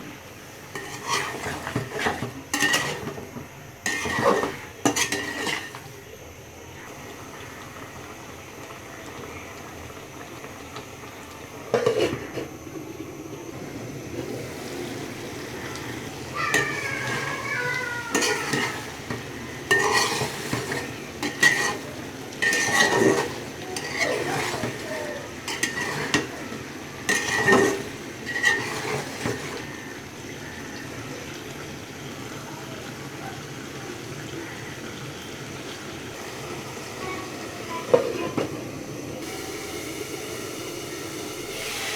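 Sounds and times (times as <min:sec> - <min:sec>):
frying hiss: 0:00.0 - 0:41.9
metal spoon clinking in pot: 0:18.1 - 0:24.8, 0:25.5 - 0:26.3, 0:27.1 - 0:29.4.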